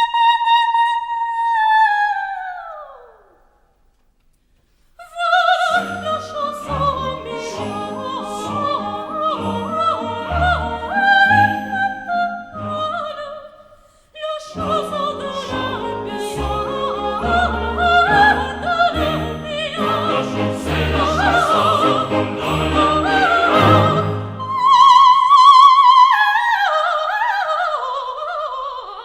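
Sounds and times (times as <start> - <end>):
person singing operatically: 5.1 - 13.5, 14.2 - 29.0
orchestra playing: 5.8 - 13.1, 14.6 - 24.8.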